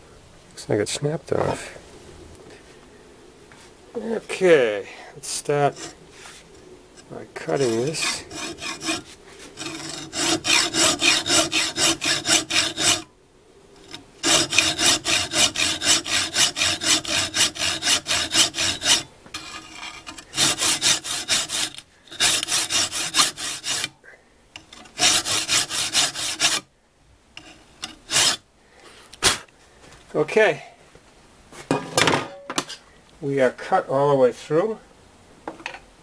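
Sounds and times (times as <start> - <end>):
hand saw cutting metal: 7.4 - 13.1, 13.8 - 23.9, 24.6 - 26.7, 27.4 - 28.4.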